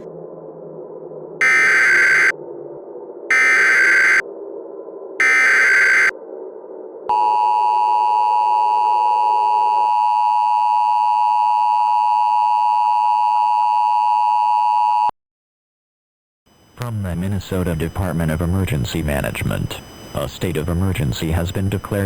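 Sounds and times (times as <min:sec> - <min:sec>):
low drone: 0:00.0 - 0:07.1
two-tone attention signal: 0:01.4 - 0:02.3, 0:03.3 - 0:04.2, 0:05.2 - 0:06.1
warbling digital data screech: 0:03.3 - 0:04.2, 0:05.2 - 0:06.2.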